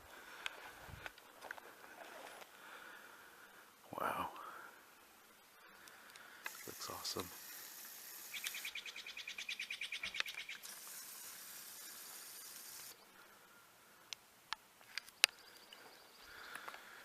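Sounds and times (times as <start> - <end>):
steady high hiss: 2.4 - 17.0
small bird trilling: 7.5 - 10.7
sharp clicks: 10.0 - 13.0.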